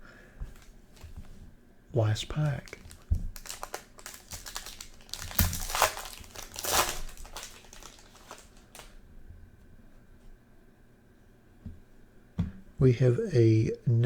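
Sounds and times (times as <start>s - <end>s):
foil wrapper tearing and crinkling: 2.3s - 9.0s.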